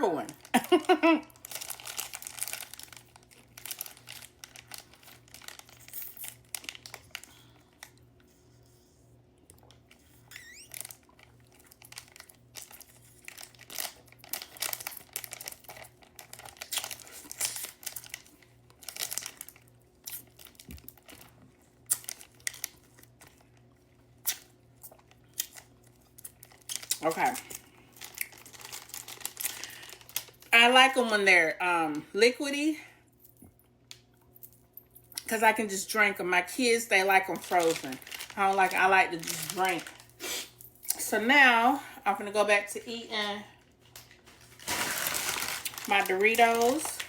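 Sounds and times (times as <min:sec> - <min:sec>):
plastic sleeve crinkling and tearing: 0:00.3 - 0:07.9, 0:09.9 - 0:23.4, 0:24.2 - 0:30.5, 0:37.2 - 0:40.4, 0:43.7 - 0:47.0.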